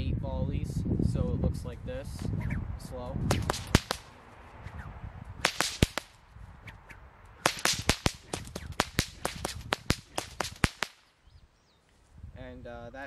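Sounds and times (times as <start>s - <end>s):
whips cracking: 3.3s - 11.1s.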